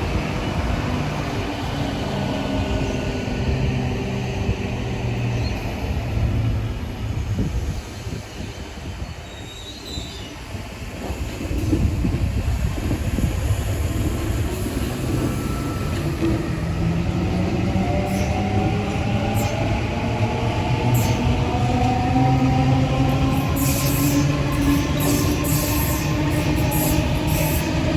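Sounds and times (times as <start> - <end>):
rising whine of train: 0.0 - 27.9
train rumbling: 0.0 - 27.9.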